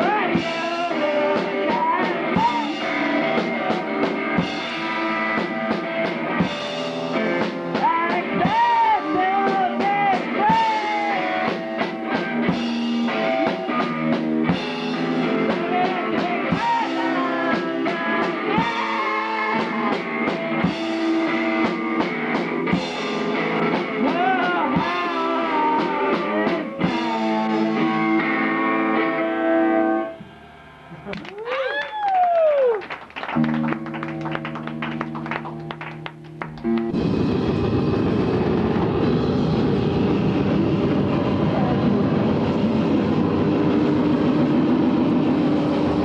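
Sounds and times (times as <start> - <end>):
person singing: 0.0 - 4.2, 7.7 - 11.7, 15.0 - 21.7, 23.6 - 30.2
drum kit: 0.0 - 31.3, 33.2 - 46.0
guitar: 0.0 - 46.0.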